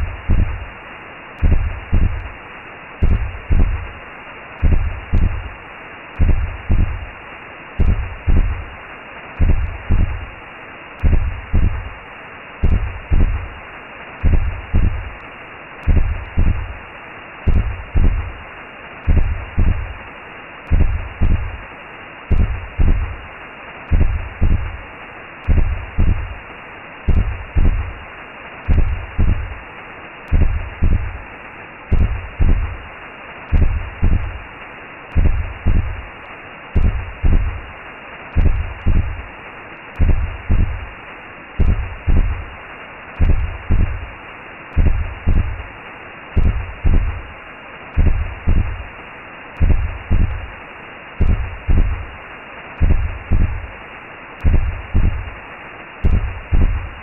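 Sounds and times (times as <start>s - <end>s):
double-thump heartbeat: 0.0s - 0.7s, 1.4s - 2.3s, 3.0s - 3.9s, 4.6s - 5.5s, 6.2s - 7.1s, 7.8s - 8.7s, 9.4s - 10.3s, 11.0s - 11.9s, 12.6s - 13.5s, 14.2s - 15.2s, 15.8s - 16.8s, 17.5s - 18.4s, 19.0s - 20.0s, 20.7s - 21.6s, 22.3s - 23.2s, 23.9s - 24.8s, 25.4s - 26.4s, 27.1s - 28.0s, 28.6s - 29.6s, 30.3s - 31.2s, 31.9s - 32.8s, 33.5s - 34.4s, 35.1s - 36.1s, 36.8s - 37.6s, 38.3s - 39.3s, 40.0s - 40.9s, 41.6s - 42.5s, 43.2s - 44.1s, 44.7s - 45.7s, 46.4s - 47.3s, 48.0s - 48.9s, 49.6s - 50.5s, 51.2s - 52.1s, 52.8s - 53.7s, 54.4s - 55.4s, 56.0s - 57.0s
muffled rushing noise: 0.0s - 57.0s.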